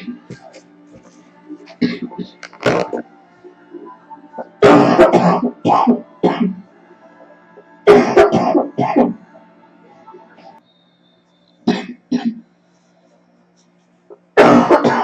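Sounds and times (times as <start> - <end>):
girl coughing: 1.8 - 2.8, 4.6 - 6.6, 7.9 - 9.2, 11.7 - 12.4, 14.4 - 15.0.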